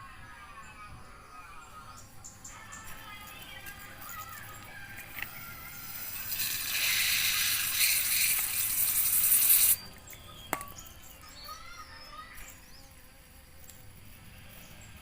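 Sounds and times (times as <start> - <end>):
pressurised spray hissing: 5.3 - 9.8.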